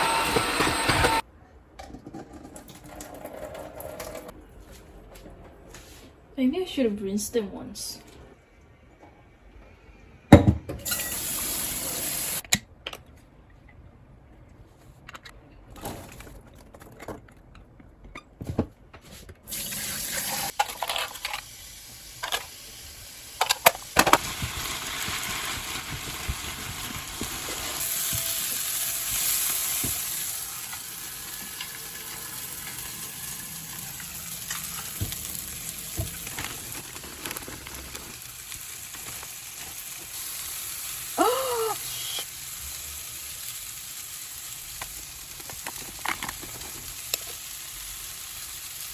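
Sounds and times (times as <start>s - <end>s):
vegetables sizzling in a pot: 19.5s - 48.9s.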